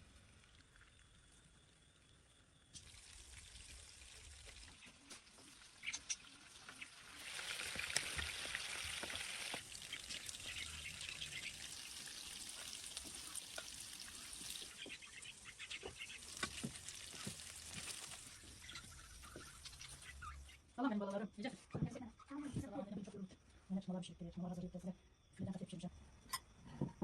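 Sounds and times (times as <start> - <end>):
liquid pouring hiss: 2.6 - 20.1.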